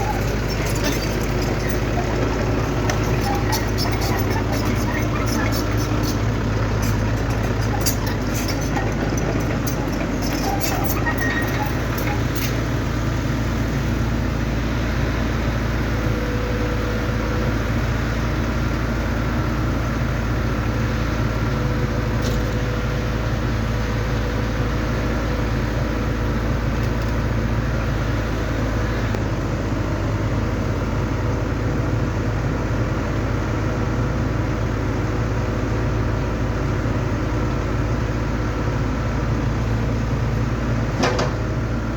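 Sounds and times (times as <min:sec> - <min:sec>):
excavator diesel engine drone: 0:00.0 - 0:41.9.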